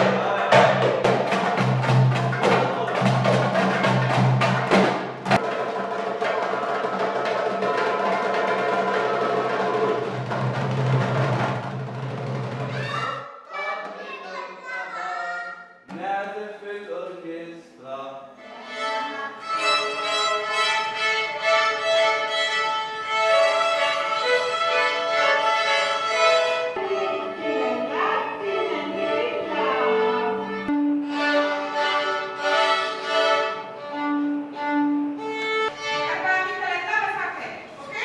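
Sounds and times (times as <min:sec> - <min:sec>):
violin music: 0:18.4 - 0:37.0.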